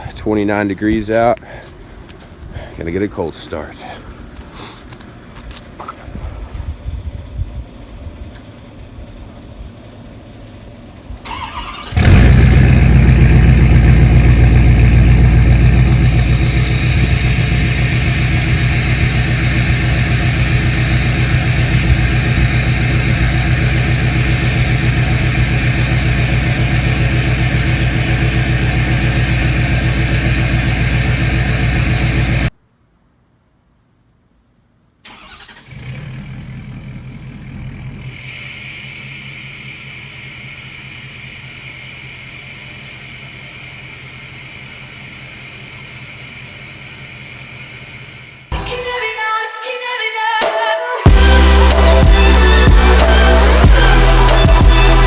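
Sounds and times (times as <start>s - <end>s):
diesel engine idling loudly: 7.0s - 32.5s, 35.7s - 48.5s, 51.1s - 55.0s
engine cranking: 11.2s - 32.5s, 35.1s - 48.4s
high whine: 11.9s - 32.5s, 51.0s - 55.0s.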